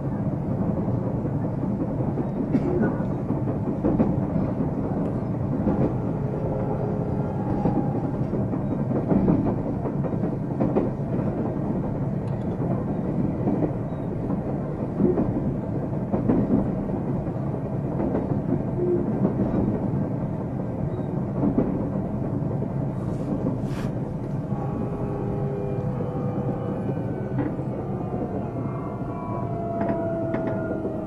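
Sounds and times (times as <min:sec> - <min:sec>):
wheel and rail rumble: 0:00.0 - 0:31.0
rail joint clicks: 0:00.6 - 0:31.0
brief hisses: 0:23.0 - 0:24.0.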